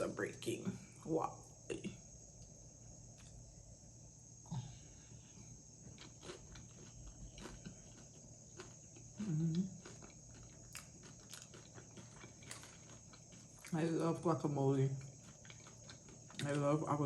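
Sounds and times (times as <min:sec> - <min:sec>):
chips crunching: 0:05.9 - 0:09.1, 0:09.8 - 0:13.8.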